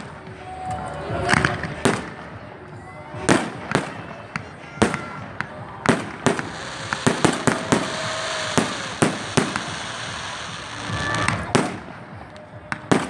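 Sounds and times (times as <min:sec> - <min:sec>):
fireworks bangs: 0:01.3 - 0:02.5, 0:03.2 - 0:13.0
fireworks crackling hiss: 0:03.3 - 0:13.0.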